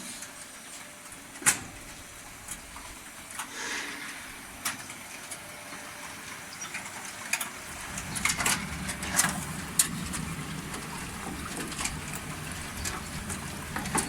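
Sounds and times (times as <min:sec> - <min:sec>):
frying machine running: 0:00.0 - 0:14.0
sharp clicks and knocks: 0:06.8 - 0:14.0
low hum: 0:07.7 - 0:14.0.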